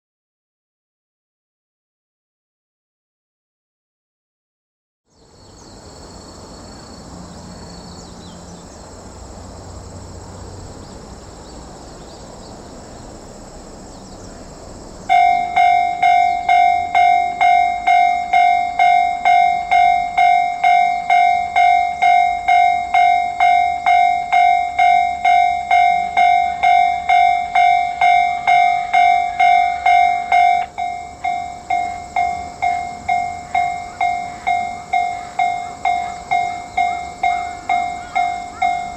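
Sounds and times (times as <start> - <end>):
faint outdoor background: 5.1 - 38.9
level crossing warning bell: 15.1 - 38.9.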